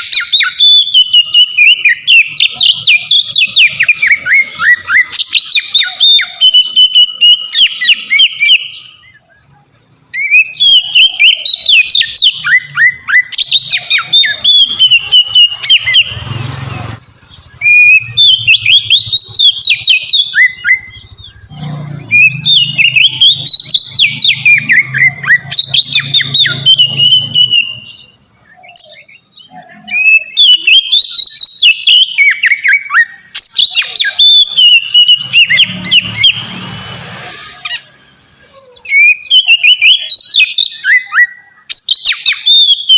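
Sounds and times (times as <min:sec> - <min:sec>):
songbird whistling song: 0:00.0 - 0:42.9.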